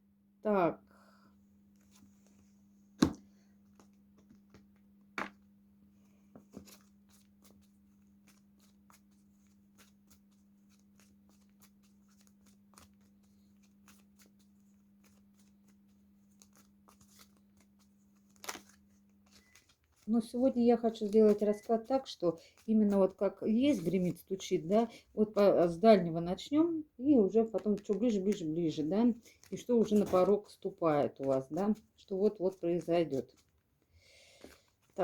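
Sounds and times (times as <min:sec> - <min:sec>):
faint steady hum: 0:00.0 - 0:22.8
cards being shuffled: 0:03.0 - 0:05.4, 0:06.4 - 0:25.8, 0:27.4 - 0:35.0.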